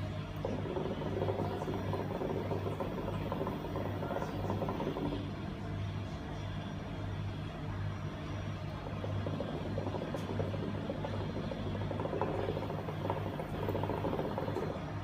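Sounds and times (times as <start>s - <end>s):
hookah water bubbling: 0.0s - 5.5s, 8.6s - 15.0s
low hum: 0.0s - 15.0s.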